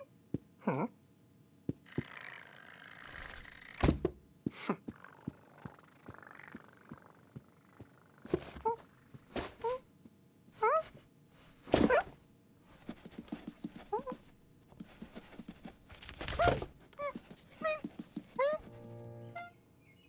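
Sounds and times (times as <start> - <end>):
rustling: 3.0 - 4.2, 8.3 - 9.8, 10.6 - 18.9.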